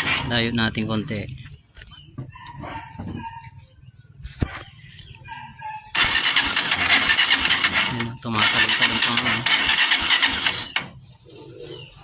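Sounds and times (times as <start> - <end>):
motorcycle starter cranking engine: 0.0 - 0.5, 5.9 - 11.0
bird calls: 0.0 - 6.6, 7.2 - 12.0.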